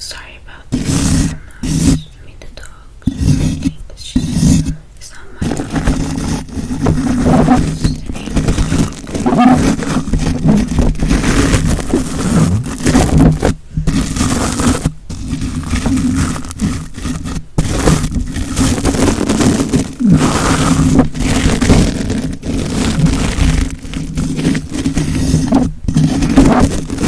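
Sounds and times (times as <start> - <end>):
scratching and rubbing on surface: 0.7 - 2.1, 3.1 - 27.0.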